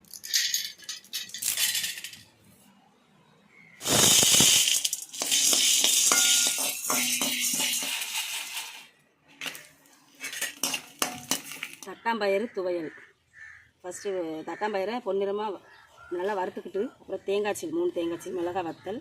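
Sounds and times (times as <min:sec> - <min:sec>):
kitchenware rattling and clinking: 0:00.0 - 0:02.2, 0:03.8 - 0:11.9.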